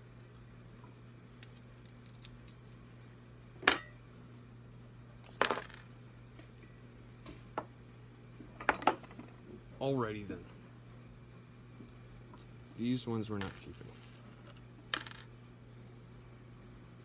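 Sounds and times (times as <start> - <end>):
small metal parts clinking: 1.4 - 2.7.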